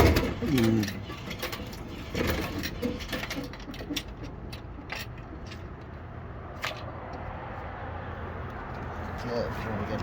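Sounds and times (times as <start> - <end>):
sharp clicks and clunks: 0.0 - 6.0.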